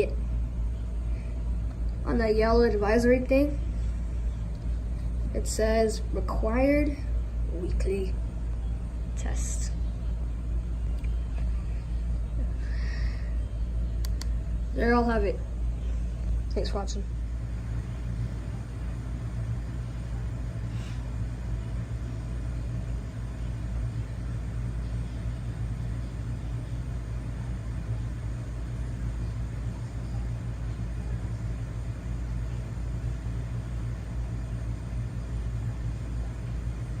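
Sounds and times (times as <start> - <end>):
steady low rumble: 0.0 - 37.0
faint click: 10.9 - 11.5, 14.0 - 14.4.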